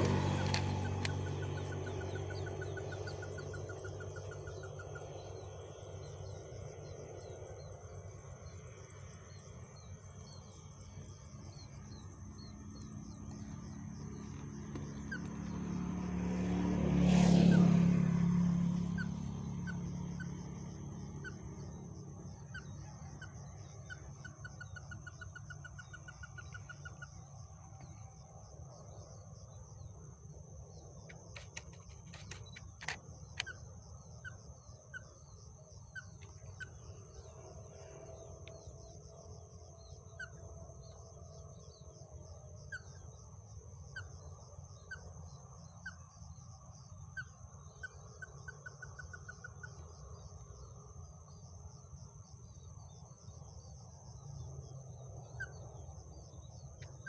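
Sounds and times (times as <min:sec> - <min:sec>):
sharp clicks: 0:00.0 - 0:01.2, 0:31.1 - 0:33.6.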